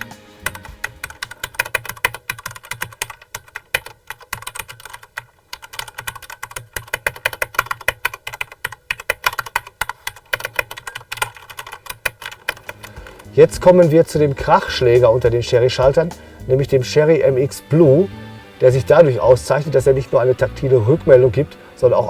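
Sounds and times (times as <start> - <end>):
mechanical keyboard typing: 0.0 - 14.8.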